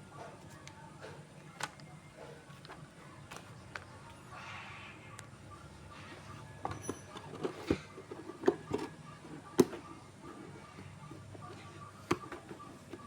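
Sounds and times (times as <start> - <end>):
knocks and taps of box handling: 11.2 - 13.0.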